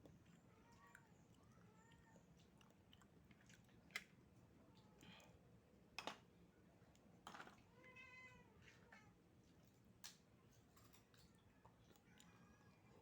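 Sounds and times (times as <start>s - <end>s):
cat meowing softly: 7.7s - 9.2s, 12.0s - 13.0s.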